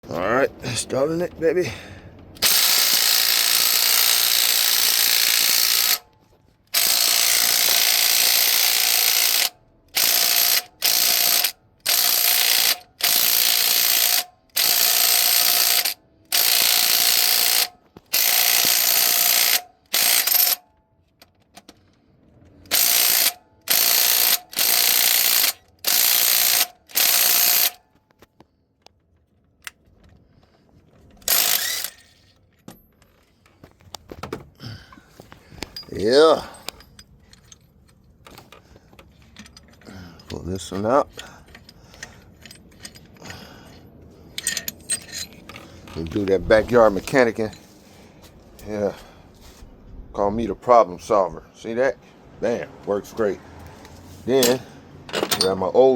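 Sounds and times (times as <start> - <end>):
power ratchet running: 2.4 - 6.0, 6.7 - 20.6, 22.7 - 27.8, 31.2 - 32.2.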